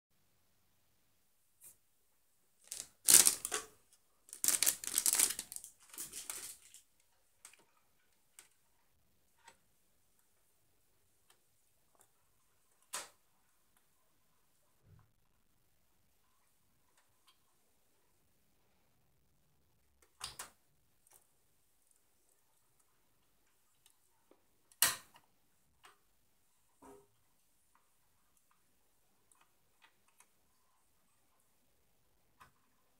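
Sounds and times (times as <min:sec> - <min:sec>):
hard objects clicking and rattling: 0:02.7 - 0:03.7, 0:04.3 - 0:06.8.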